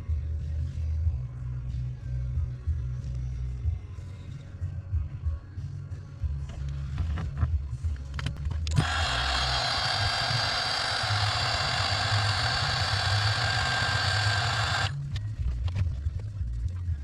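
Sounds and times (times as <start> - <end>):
heat gun blowing: 8.7 - 15.0.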